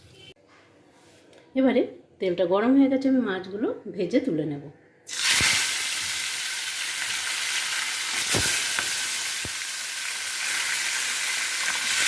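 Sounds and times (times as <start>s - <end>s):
fish sizzling in frying pan: 5.1s - 12.0s.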